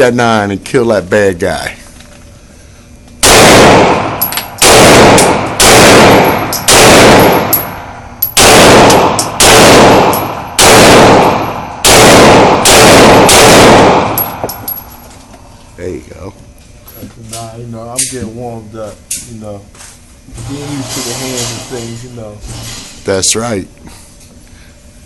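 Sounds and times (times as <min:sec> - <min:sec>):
handgun shots echoing: 0:03.2 - 0:14.9.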